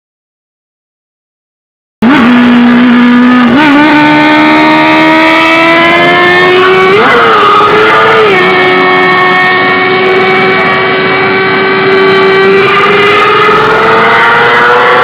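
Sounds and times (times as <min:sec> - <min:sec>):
motorcycle engine accelerating: 0:02.0 - 0:15.0.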